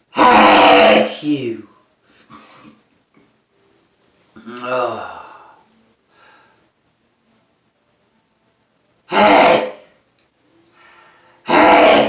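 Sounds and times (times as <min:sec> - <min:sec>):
man sneezing: 0:00.1 - 0:01.4, 0:11.5 - 0:12.0
drawn-in breath: 0:05.1 - 0:06.7, 0:10.7 - 0:11.5.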